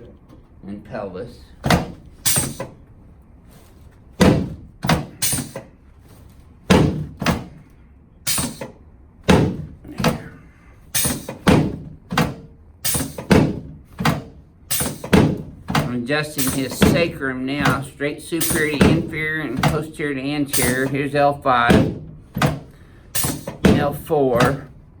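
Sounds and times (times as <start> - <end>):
sharp thuds on treatment table: 1.6 - 2.8, 4.2 - 5.7, 6.7 - 7.6, 8.3 - 10.4, 11.0 - 19.9, 21.7 - 24.8.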